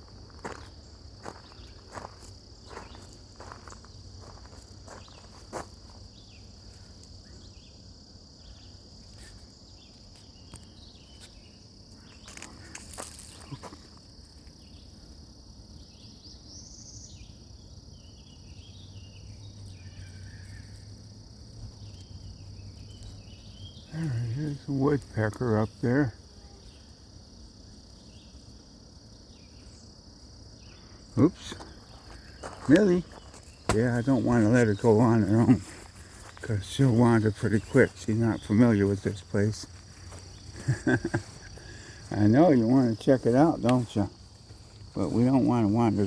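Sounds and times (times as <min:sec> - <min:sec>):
footsteps on trail: 0:00.0 - 0:06.9, 0:31.2 - 0:46.0
insects buzzing: 0:00.0 - 0:46.0
rustle: 0:00.0 - 0:46.0.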